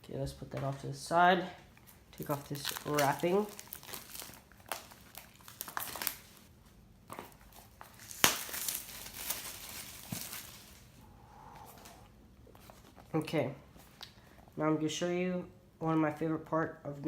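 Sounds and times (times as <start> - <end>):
plastic wrapping crinkling and tearing: 1.8 - 6.5, 7.1 - 11.0.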